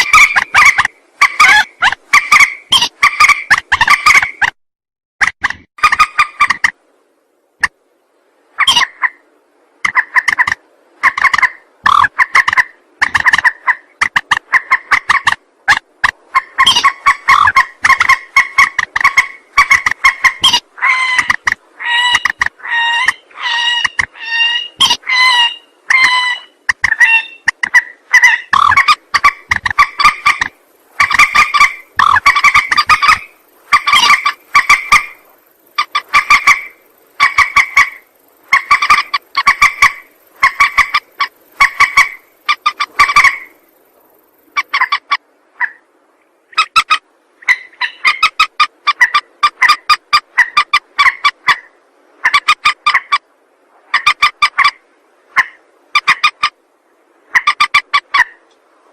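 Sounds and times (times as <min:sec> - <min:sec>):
rail calling: 0:00.0 - 0:04.5, 0:08.5 - 0:45.9.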